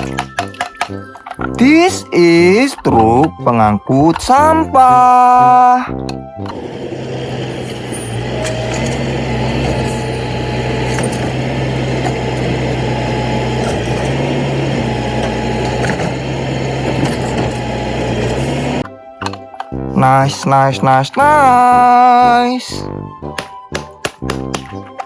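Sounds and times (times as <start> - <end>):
toy motor humming: 6.5 - 18.8.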